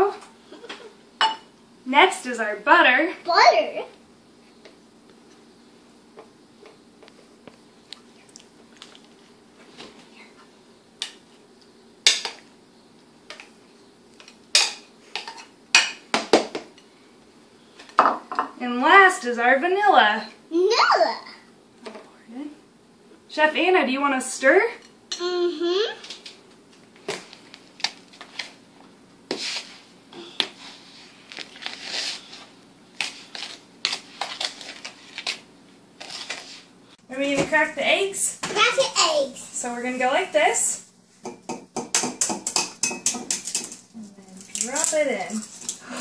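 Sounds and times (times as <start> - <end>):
utensil knocking against mixing bowl: 41.2 - 43.8.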